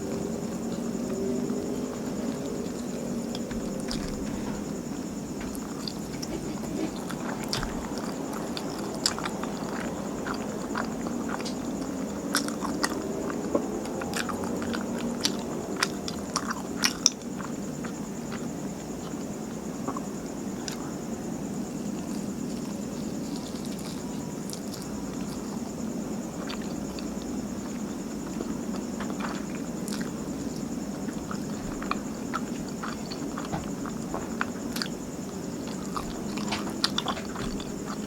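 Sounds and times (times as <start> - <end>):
wet chewing mouth sounds: 31.1 - 35.0.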